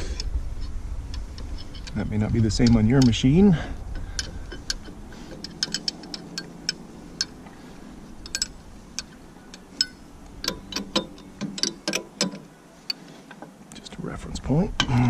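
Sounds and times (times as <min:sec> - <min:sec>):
wrench clinking on metal fittings: 0:01.4 - 0:07.4, 0:08.2 - 0:13.0.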